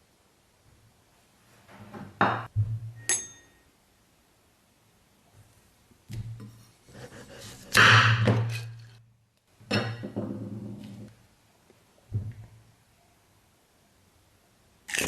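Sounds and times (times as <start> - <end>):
sharp clink: 3.0 - 3.6.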